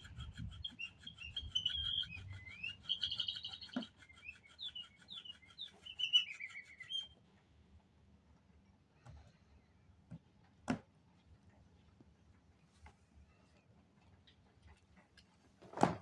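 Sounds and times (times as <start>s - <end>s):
toy bird chirping: 0.0s - 7.2s.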